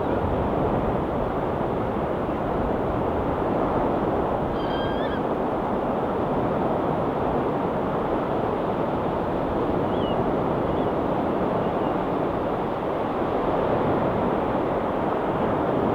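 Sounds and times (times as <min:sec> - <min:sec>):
gull calling: 0:04.6 - 0:05.2.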